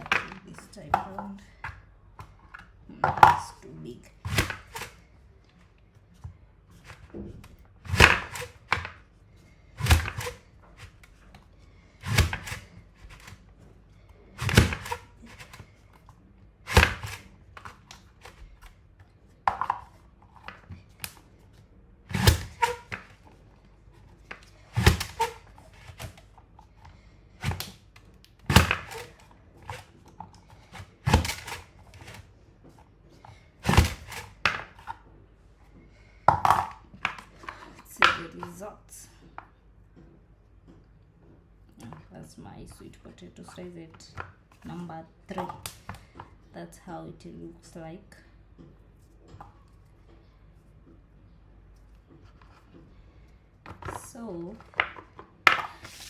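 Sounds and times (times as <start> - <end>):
mandoline slicer cutting: 7.8 - 8.9, 9.8 - 11.0, 12.0 - 13.4, 14.4 - 15.7, 22.1 - 23.1, 24.6 - 26.2, 28.5 - 30.0, 30.6 - 32.2
plunger thunk: 9.8 - 10.5, 24.8 - 26.2.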